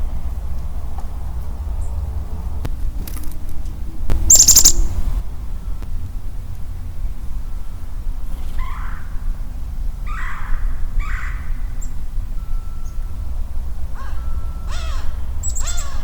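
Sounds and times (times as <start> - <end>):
faint high chirps: 4.3 - 5.0.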